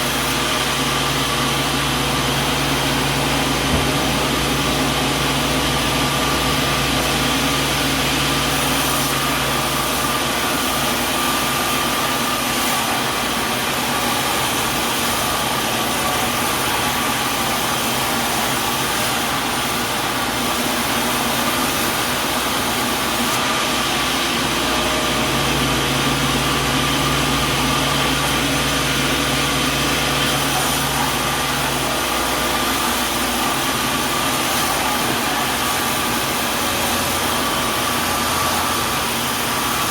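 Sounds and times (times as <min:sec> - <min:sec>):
sawmill machinery whirring: 0:00.0 - 0:39.9
deep machine hum: 0:00.7 - 0:08.6, 0:23.5 - 0:32.6.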